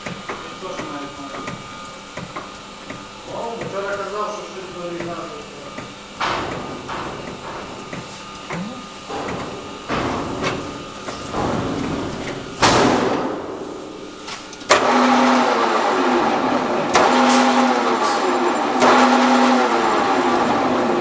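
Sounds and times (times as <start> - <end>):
knocks and clunks: 5.8 - 13.6
lathe whirring: 14.0 - 21.0.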